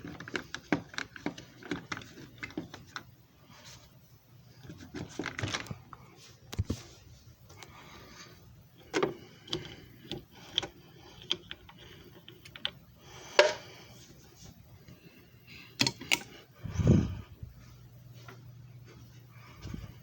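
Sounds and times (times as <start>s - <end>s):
faint low hum: 0.0s - 20.0s.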